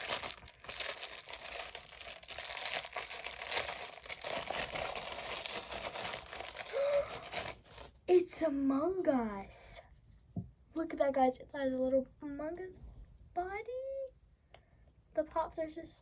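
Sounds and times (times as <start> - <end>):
packaging crinkling and tearing: 0.0 - 8.0.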